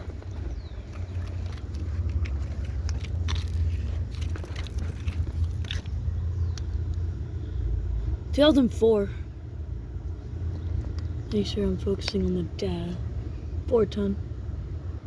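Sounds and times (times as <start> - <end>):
small clicks and crackles: 0.0 - 7.1.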